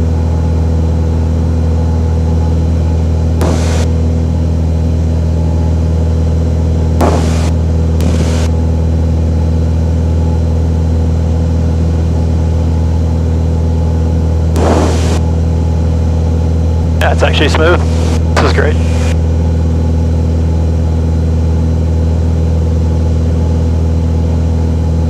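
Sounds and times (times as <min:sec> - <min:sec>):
propeller aircraft engine droning: 0:00.0 - 0:25.0
bursts of radio hiss: 0:03.4 - 0:03.9, 0:07.0 - 0:08.5, 0:14.6 - 0:15.2, 0:17.0 - 0:19.2.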